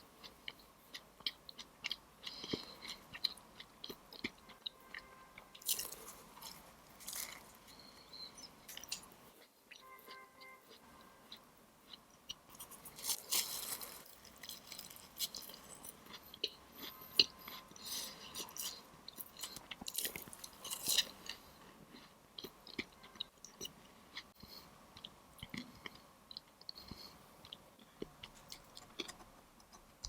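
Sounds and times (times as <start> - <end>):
crunchy chewing: 0.0 - 9.5, 10.7 - 30.0.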